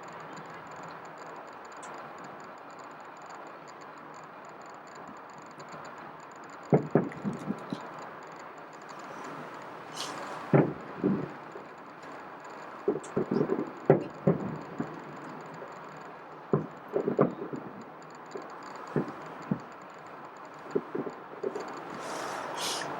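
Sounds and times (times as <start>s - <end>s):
steady background hiss: 0.0s - 22.9s
fireworks bangs: 6.7s - 7.8s, 9.0s - 11.6s, 12.8s - 15.7s, 16.5s - 17.8s, 18.4s - 19.7s, 20.6s - 22.9s
firework hiss: 9.0s - 11.6s, 20.7s - 22.9s.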